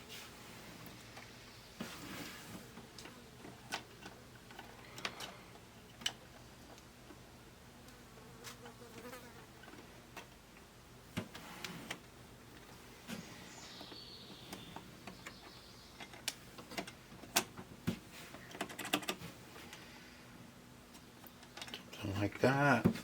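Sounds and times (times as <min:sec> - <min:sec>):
faint steady hum: 0:00.0 - 0:23.0
plastic parts clicking and tapping: 0:18.5 - 0:19.2.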